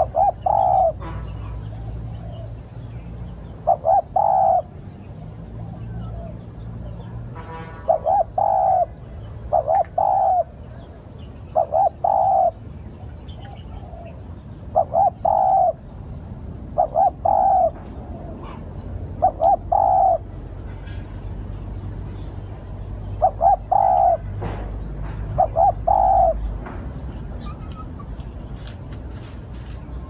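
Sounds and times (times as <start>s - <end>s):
dove cooing: 0.0s - 7.2s, 7.8s - 10.9s, 11.5s - 12.6s, 13.3s - 16.0s, 16.7s - 21.0s, 23.1s - 24.3s, 25.3s - 26.5s.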